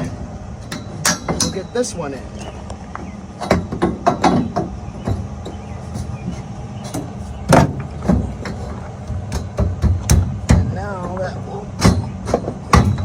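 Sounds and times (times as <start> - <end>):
metal tubes knocking and clanking: 0.0 - 2.0, 3.4 - 13.0
steady low hum: 0.0 - 13.0.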